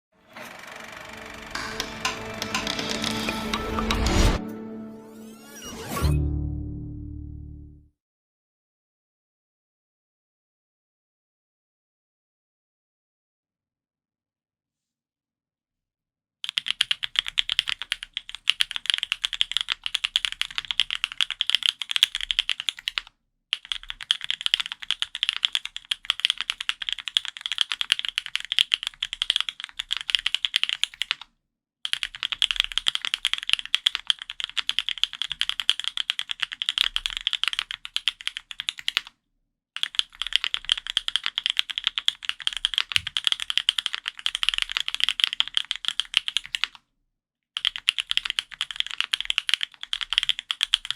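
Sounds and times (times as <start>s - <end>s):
fast mechanical keyboard typing: 0.4s - 4.0s, 16.5s - 31.3s, 31.9s - 39.1s, 39.8s - 46.8s, 47.6s - 50.9s.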